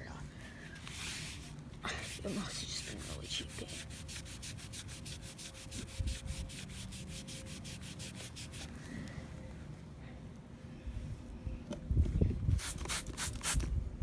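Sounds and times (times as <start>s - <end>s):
rapid rubbing scrubbing strokes: 0.9s - 8.7s.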